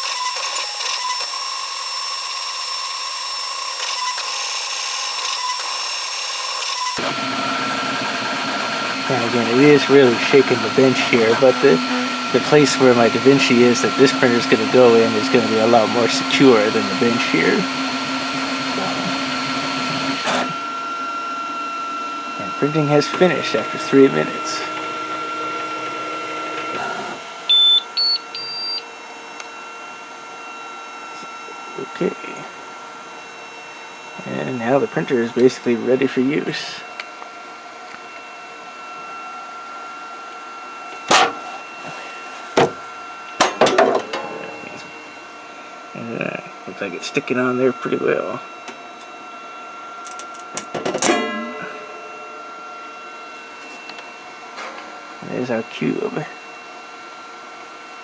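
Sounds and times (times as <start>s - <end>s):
stepper motors whining: 0.0s - 58.0s
steady hum: 7.0s - 29.5s, 31.0s - 37.9s, 41.0s - 49.0s, 51.0s - 57.1s
printer alert beeps: 27.5s - 28.8s.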